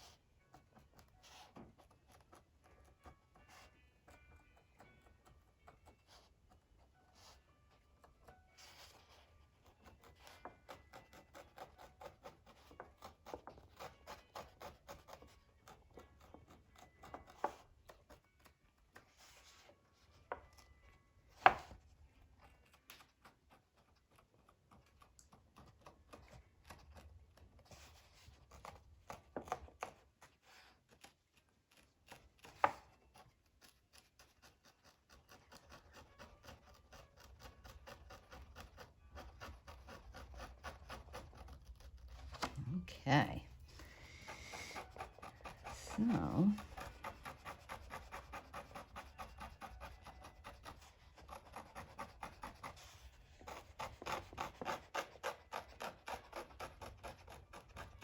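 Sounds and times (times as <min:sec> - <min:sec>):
light tapping and rubbing strokes: 0:43.6 - 0:56.2.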